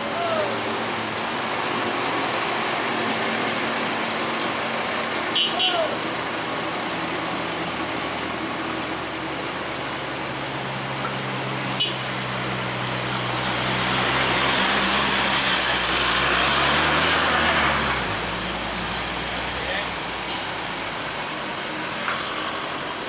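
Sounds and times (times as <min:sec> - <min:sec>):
heavy truck engine running: 0:00.0 - 0:23.0
traffic noise: 0:00.0 - 0:23.0
vehicle passing close: 0:06.0 - 0:23.0.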